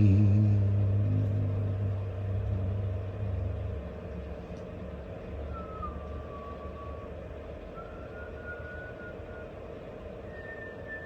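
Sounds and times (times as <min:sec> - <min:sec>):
thin high tone sliding downward: 0:00.0 - 0:07.1
low droning hum: 0:00.0 - 0:11.0.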